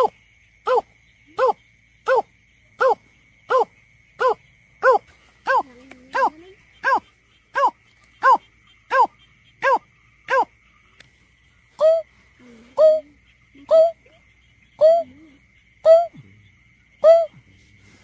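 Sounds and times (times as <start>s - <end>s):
bird hooting: 11.8s - 16.2s.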